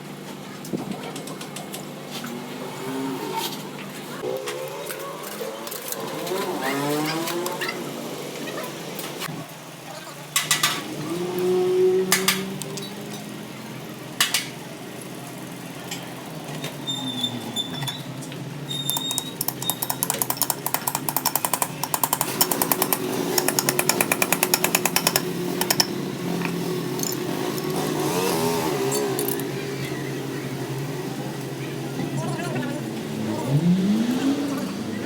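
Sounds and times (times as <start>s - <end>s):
rapid mechanical hammering: 18.9s - 28.0s.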